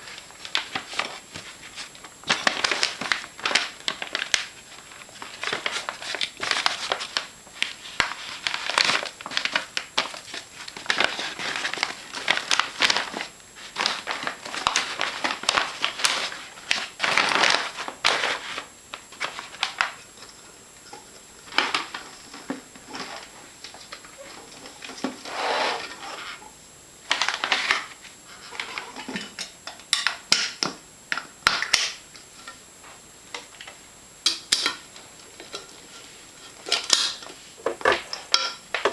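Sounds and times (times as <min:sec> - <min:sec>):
paper bag crinkling: 0:02.3 - 0:19.9.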